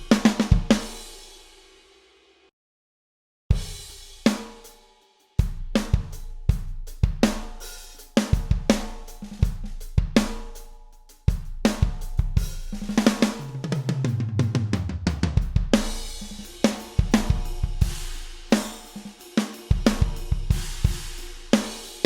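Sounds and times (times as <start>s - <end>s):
drum kit groove: 0.0s - 1.6s, 3.5s - 22.0s
tom fill: 14.3s - 22.0s
crash cymbal: 15.8s - 22.0s.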